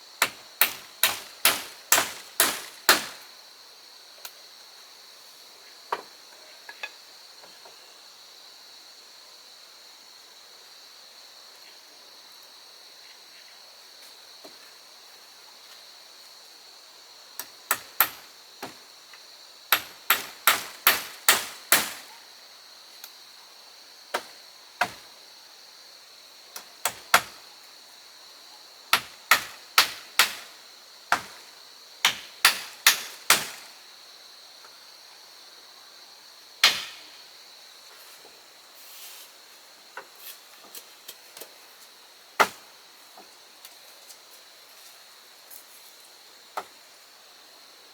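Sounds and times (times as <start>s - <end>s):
insects chirring: 0.0s - 47.9s
hammering on wood: 0.2s - 3.2s, 17.7s - 18.8s, 19.7s - 22.1s, 28.9s - 30.5s, 31.1s - 31.4s, 32.0s - 33.7s, 36.6s - 37.0s.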